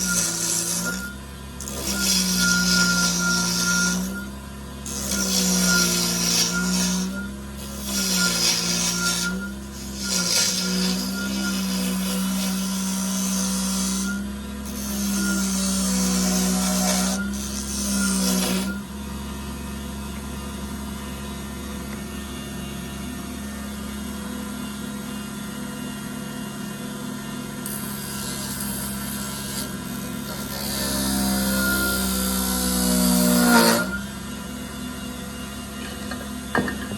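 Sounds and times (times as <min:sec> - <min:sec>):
power tool sanding wood: 0:30.5 - 0:34.4.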